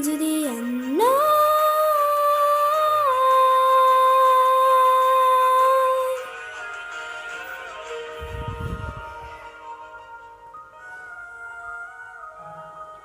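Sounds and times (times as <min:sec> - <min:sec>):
woman singing a long note: 0:00.0 - 0:06.3.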